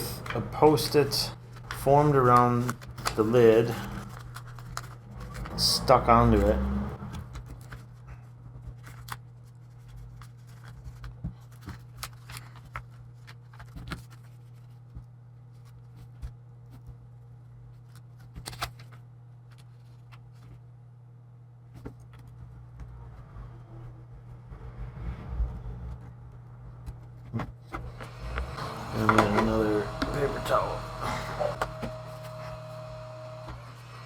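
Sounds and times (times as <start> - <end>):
steady low hum: 0.0 - 10.4, 19.0 - 34.0
paper rustling: 0.0 - 20.6, 26.9 - 34.0.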